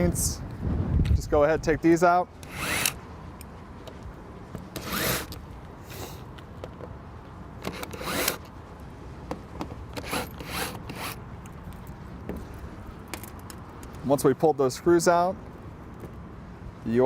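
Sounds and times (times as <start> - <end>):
screwdriver rasping out screws: 2.4 - 3.0, 4.7 - 6.2, 7.6 - 8.5, 10.0 - 11.2.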